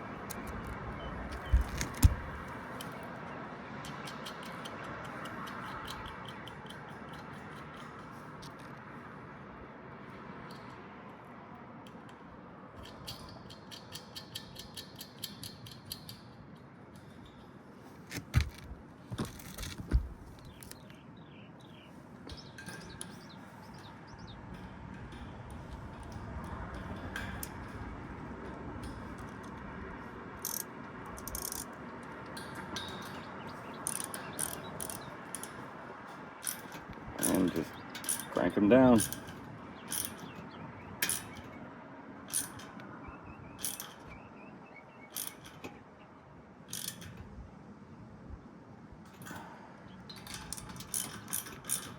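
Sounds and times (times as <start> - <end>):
steady background noise: 0.0 - 51.9
rapid metal clicks: 3.8 - 8.8, 12.8 - 17.5, 22.3 - 41.6
sharp metal knocks: 32.4 - 41.6.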